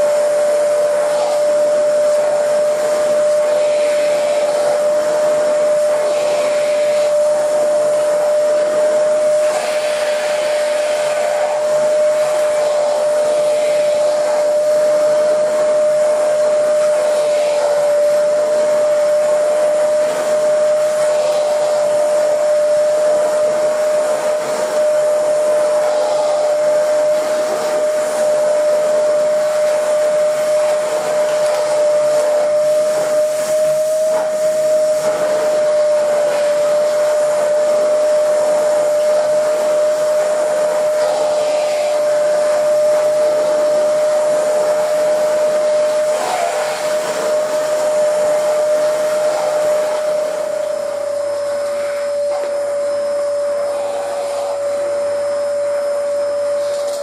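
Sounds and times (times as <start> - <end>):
vacuum cleaner running: 0.0 - 57.0.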